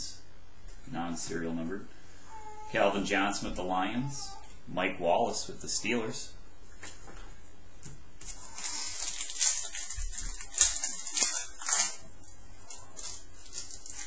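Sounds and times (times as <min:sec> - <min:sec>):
foil wrapper crinkling and tearing: 0:08.2 - 0:14.0.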